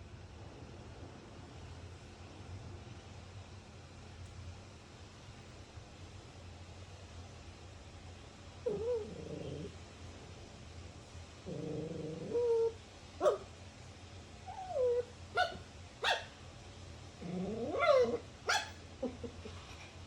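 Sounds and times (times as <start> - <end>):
dog growling: 8.6 - 9.8, 11.4 - 13.4, 17.2 - 18.3
dog yipping and barking: 12.4 - 13.5, 14.5 - 16.4, 17.6 - 19.2.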